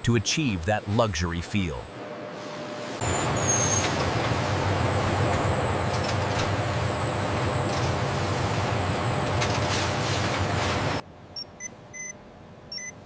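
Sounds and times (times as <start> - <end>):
industrial machinery droning: 0.0 - 11.0.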